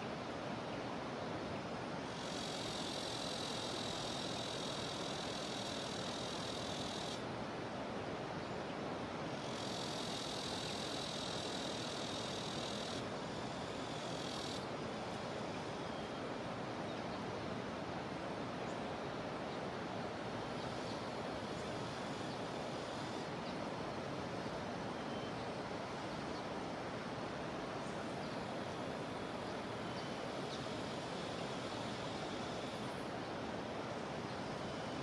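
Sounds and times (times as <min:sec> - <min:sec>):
cicada buzz: 0:02.0 - 0:07.2, 0:09.3 - 0:16.1, 0:20.6 - 0:23.4.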